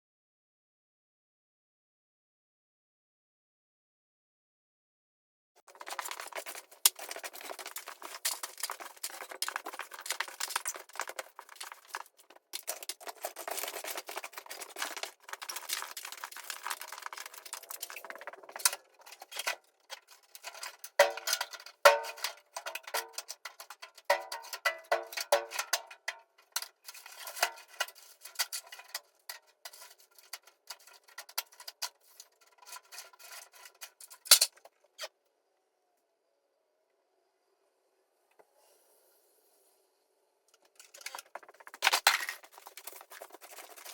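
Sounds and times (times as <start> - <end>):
scraping and rasping: 5.6 - 35.1, 40.6 - 43.9.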